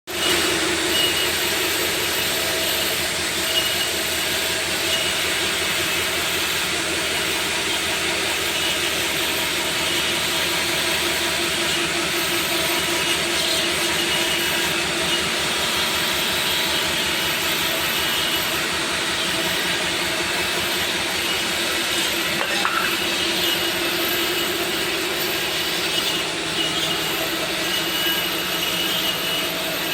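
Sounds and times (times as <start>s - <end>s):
cnc machine droning: 0.1s - 29.9s.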